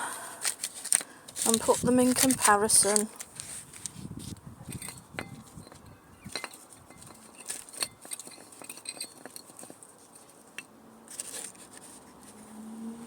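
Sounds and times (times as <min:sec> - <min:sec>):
metal brake parts clinking: 0:04.7 - 0:11.9.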